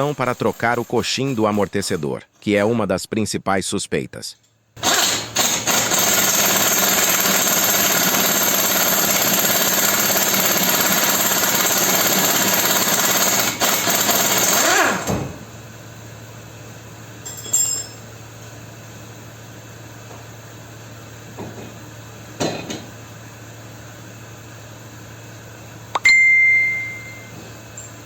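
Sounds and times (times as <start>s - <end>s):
metallic clink: 17.2s - 18.1s.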